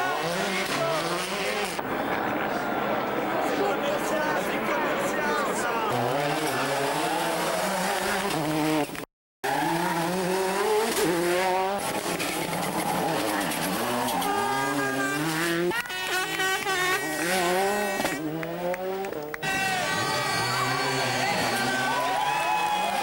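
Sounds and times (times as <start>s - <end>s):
rally car engines at full throttle: 0.0s - 23.0s
high squeal: 19.4s - 22.5s.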